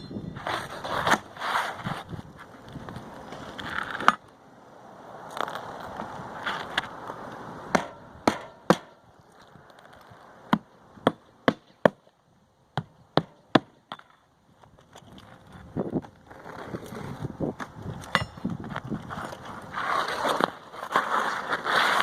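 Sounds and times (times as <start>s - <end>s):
rustling and scraping: 0.0s - 4.3s, 5.3s - 7.2s, 14.6s - 22.0s
hatchet hammering nails: 7.7s - 8.9s.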